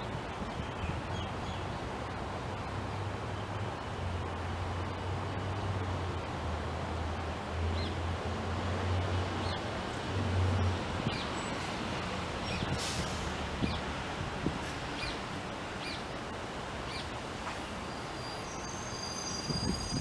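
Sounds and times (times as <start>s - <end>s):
wind gusting over microphone: 0.0s - 3.1s, 8.4s - 15.9s, 19.1s - 20.0s.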